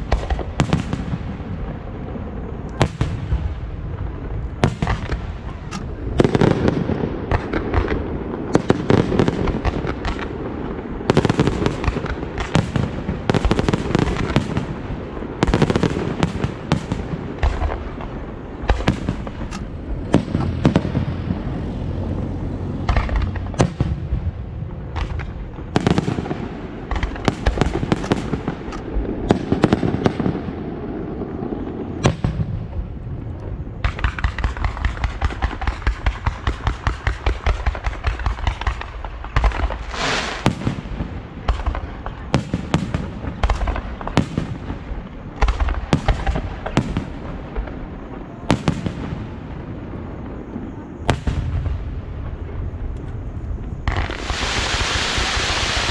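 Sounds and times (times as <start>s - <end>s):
rapid firework pops: 0.0s - 1.2s, 4.6s - 8.0s, 8.6s - 10.4s, 11.1s - 14.8s, 22.8s - 24.0s, 24.9s - 30.2s, 33.8s - 47.8s
brief hiss: 39.8s - 40.5s.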